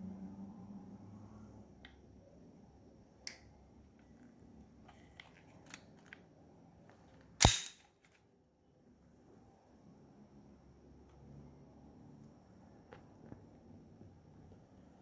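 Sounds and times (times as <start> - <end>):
airsoft pistol shot: 7.4 - 7.8.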